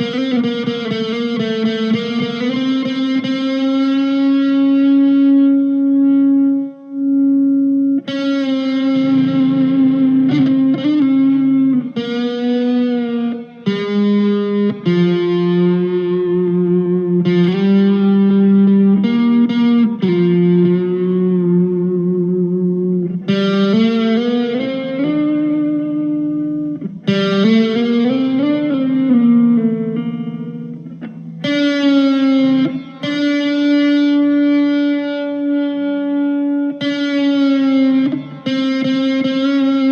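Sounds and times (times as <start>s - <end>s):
electric guitar lead line: 0.0s - 39.9s.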